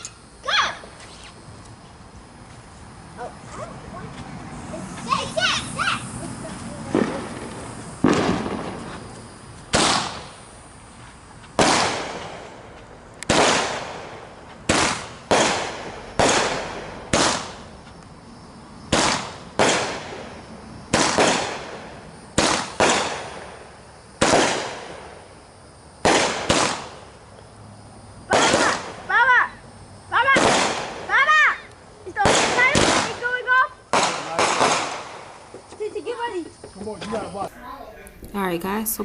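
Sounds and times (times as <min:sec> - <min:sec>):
fireworks bangs with echo: 0:06.8 - 0:09.1, 0:09.7 - 0:10.4, 0:11.6 - 0:12.7, 0:13.3 - 0:17.7, 0:18.9 - 0:25.3, 0:26.0 - 0:27.1, 0:28.3 - 0:29.0, 0:30.2 - 0:31.3, 0:32.2 - 0:35.5.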